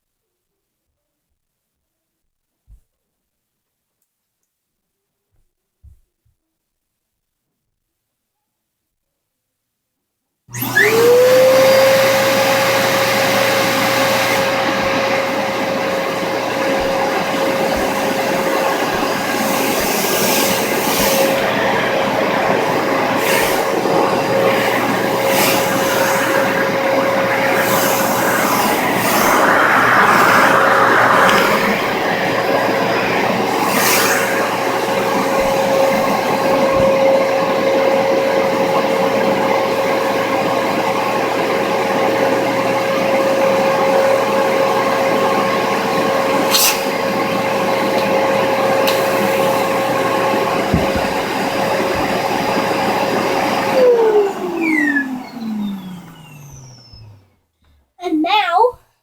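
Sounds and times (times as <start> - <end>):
vacuum cleaner motor whine: 10.5 - 57.4.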